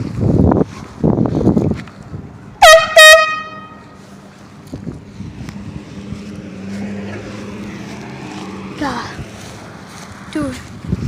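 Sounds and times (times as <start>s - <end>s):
air horn blasts: 2.6s - 4.0s.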